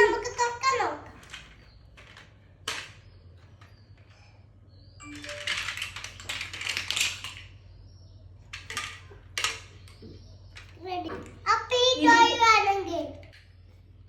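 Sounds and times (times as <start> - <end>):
toy pieces clattering: 1.1 - 4.1, 5.0 - 7.6, 8.5 - 11.4.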